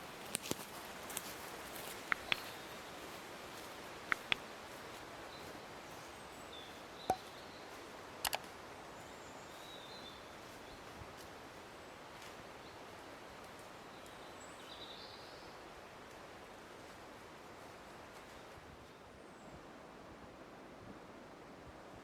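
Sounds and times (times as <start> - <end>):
wind in trees: 0.0 - 22.0
sharp clicks: 2.0 - 2.5, 4.1 - 4.5, 8.2 - 8.5
faint bird chirps: 2.0 - 3.0.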